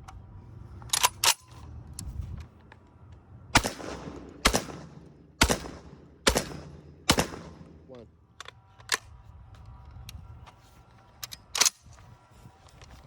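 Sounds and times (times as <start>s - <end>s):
shotgun shots with echo: 3.6s - 8.0s.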